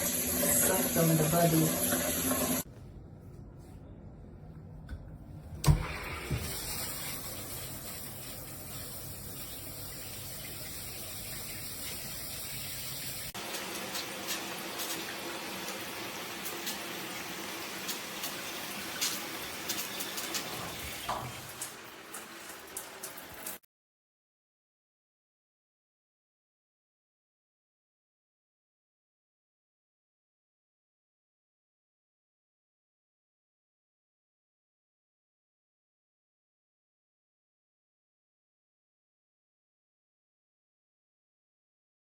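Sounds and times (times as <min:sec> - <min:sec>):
shower spraying water: 0:00.0 - 0:02.6, 0:05.7 - 0:23.7
water tapping and splashing: 0:17.8 - 0:23.6.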